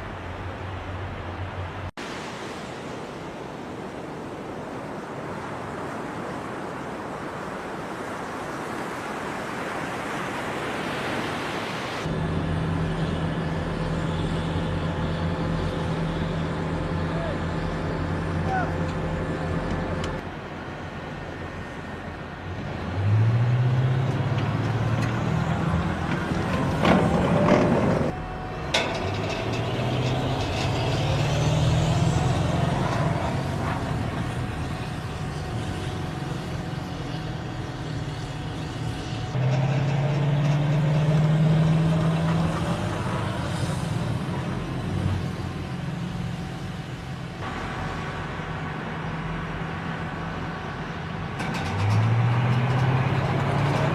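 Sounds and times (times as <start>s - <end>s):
heavy vehicle engine revving: 22.7s - 48.9s, 51.1s - 53.9s.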